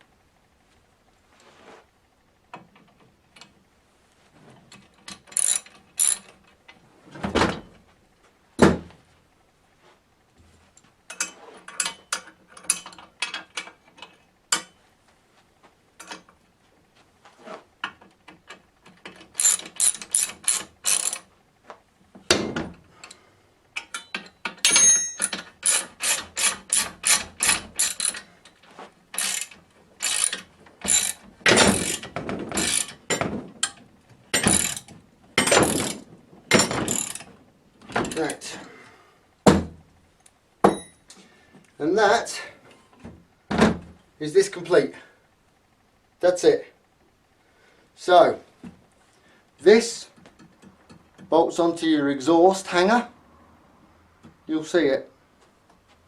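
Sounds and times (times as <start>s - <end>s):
ratchet spanner clicking: 5.1s - 6.4s, 18.9s - 21.3s, 23.8s - 36.0s, 36.6s - 37.3s
knocks of tool on metal parts: 40.6s - 41.0s.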